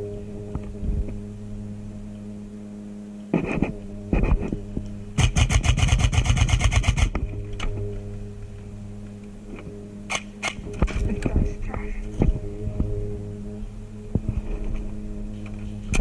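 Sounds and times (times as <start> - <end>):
steady low hum: 0.0 - 16.0
airsoft gun firing full-auto: 5.2 - 7.1.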